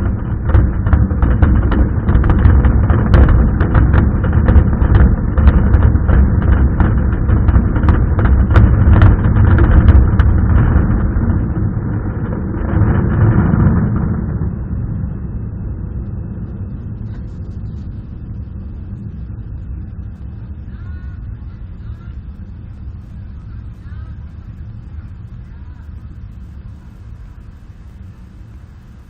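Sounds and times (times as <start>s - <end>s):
fireworks bangs and crackles: 0.0s - 14.6s.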